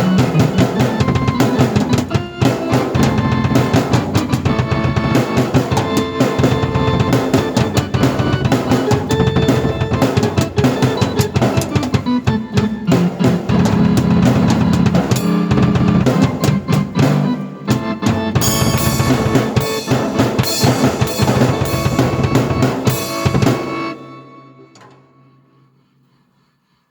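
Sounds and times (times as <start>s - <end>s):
drum kit playing: 0.0s - 25.0s
keyboard chords: 0.0s - 26.1s.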